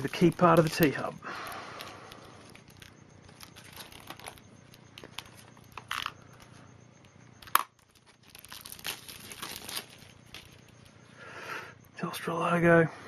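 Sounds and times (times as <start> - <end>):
plastic packaging crinkling: 0.0 - 6.2, 7.4 - 11.0.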